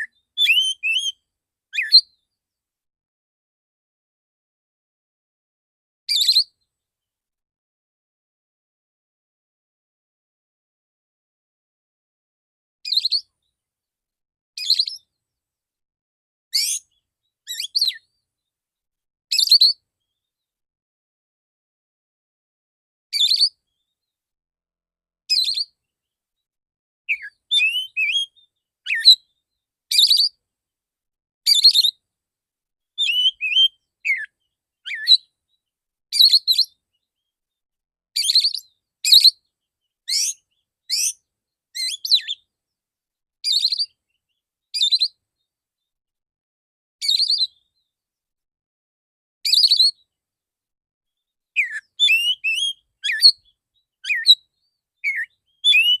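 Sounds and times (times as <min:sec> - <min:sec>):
bird singing whistled rasping notes: 0:00.0 - 0:01.2, 0:01.8 - 0:02.2, 0:12.9 - 0:13.3, 0:14.6 - 0:15.1, 0:16.6 - 0:16.9, 0:17.5 - 0:18.1, 0:19.3 - 0:19.8, 0:25.3 - 0:25.8, 0:27.1 - 0:29.3, 0:29.9 - 0:30.4, 0:31.5 - 0:32.0, 0:33.0 - 0:35.3, 0:36.2 - 0:36.8, 0:38.2 - 0:39.4, 0:40.1 - 0:41.2, 0:41.8 - 0:42.5, 0:43.4 - 0:44.0, 0:44.8 - 0:45.2, 0:47.0 - 0:47.6, 0:49.5 - 0:50.0, 0:51.6 - 0:56.0.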